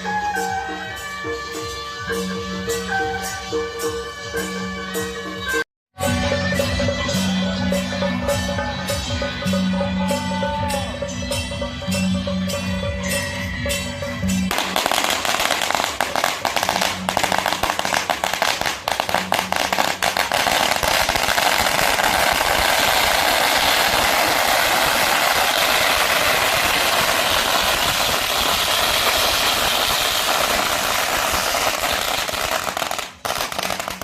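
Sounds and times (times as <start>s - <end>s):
firecrackers banging: 14.5s - 34.0s.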